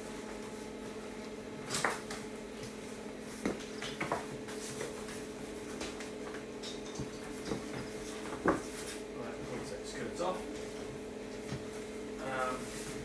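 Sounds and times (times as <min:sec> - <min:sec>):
knocks and clatters of fridge parts: 0:01.6 - 0:09.8, 0:10.5 - 0:11.8.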